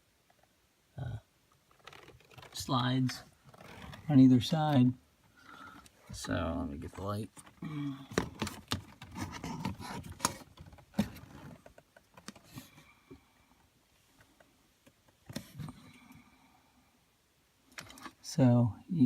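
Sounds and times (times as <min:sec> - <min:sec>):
handling clicks and knocks: 0:01.6 - 0:04.1, 0:07.3 - 0:12.6.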